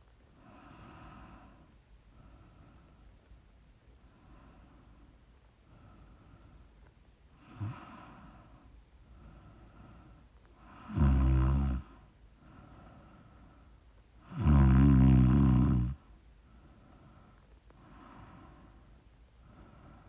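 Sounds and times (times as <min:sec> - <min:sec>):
soft breathing: 0:00.4 - 0:11.0, 0:11.8 - 0:14.2, 0:16.4 - 0:20.0
woman snoring: 0:10.7 - 0:11.9, 0:14.3 - 0:16.0.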